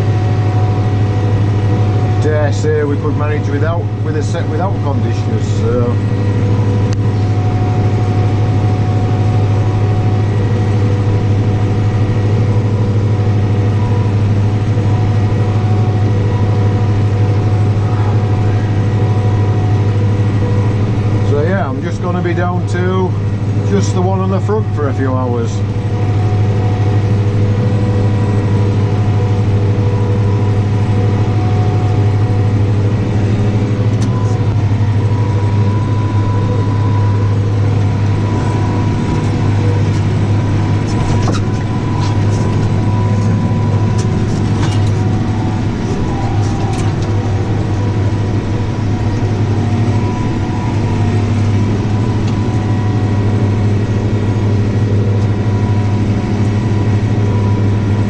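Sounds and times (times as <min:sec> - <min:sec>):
tractor engine droning: 0:00.0 - 0:58.0.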